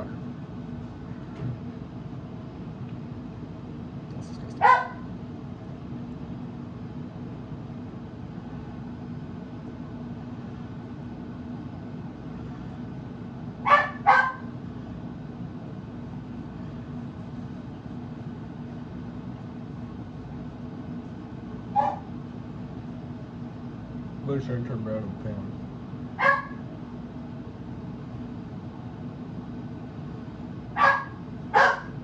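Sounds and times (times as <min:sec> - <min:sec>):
low background hum: 0:00.0 - 0:32.0
dog barking: 0:04.6 - 0:05.1, 0:13.6 - 0:14.5, 0:21.7 - 0:22.1, 0:26.2 - 0:26.6, 0:30.8 - 0:32.0.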